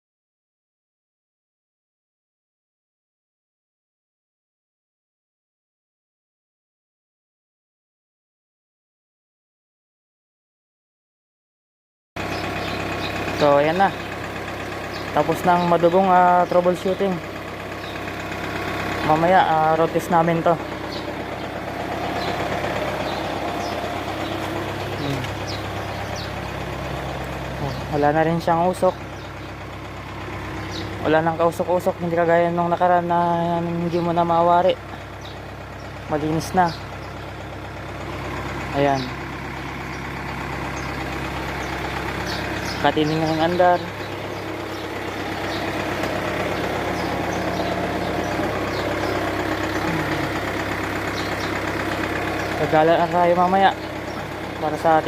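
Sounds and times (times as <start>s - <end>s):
car engine idling: 12.2s - 55.0s.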